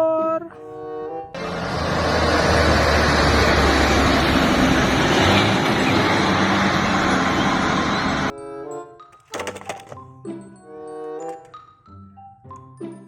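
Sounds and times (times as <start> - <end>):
truck engine running: 1.4 - 8.3.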